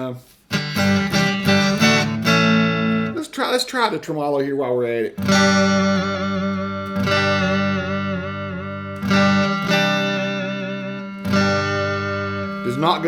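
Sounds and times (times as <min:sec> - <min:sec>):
electric guitar chords with vibrato: 0:00.5 - 0:03.2, 0:05.2 - 0:13.0.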